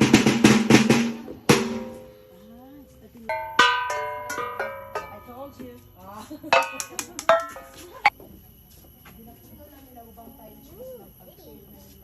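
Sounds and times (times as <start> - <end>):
bell-like metallic strikes: 3.3 - 5.6.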